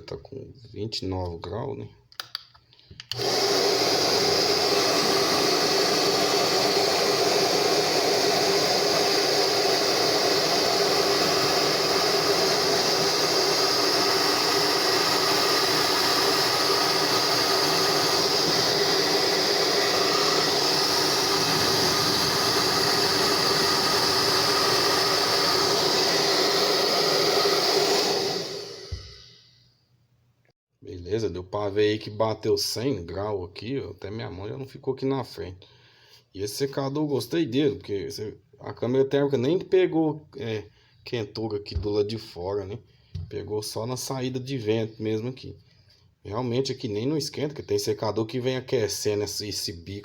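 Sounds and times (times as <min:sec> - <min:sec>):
hair dryer running: 0:03.1 - 0:29.4.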